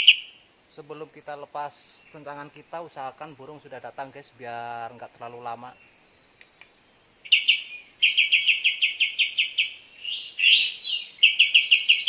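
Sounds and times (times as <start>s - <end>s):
bird sharp chirps: 0.0s - 0.4s, 5.7s - 12.0s
harsh sweeping bird call: 7.2s - 12.0s.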